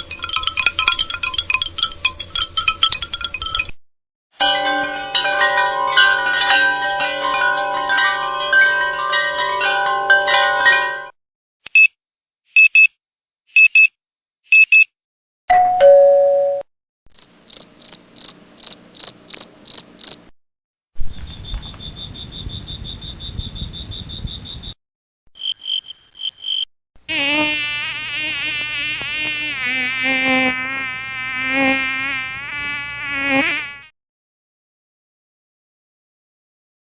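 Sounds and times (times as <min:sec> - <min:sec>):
rough buzz with high tone: 0:27.0 - 0:33.9.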